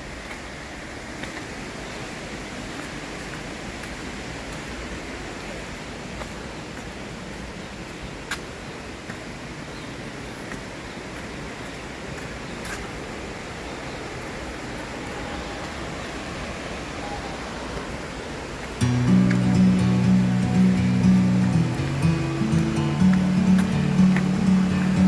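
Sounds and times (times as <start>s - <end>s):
waterfall rushing: 18.8s - 25.0s.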